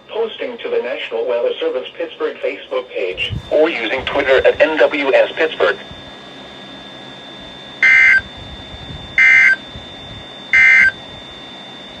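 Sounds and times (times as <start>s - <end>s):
faint steady high tone: 7.7s - 8.3s, 9.2s - 9.7s, 10.4s - 12.0s
digital data tone bursts: 7.8s - 8.3s, 9.2s - 9.6s, 10.5s - 11.0s.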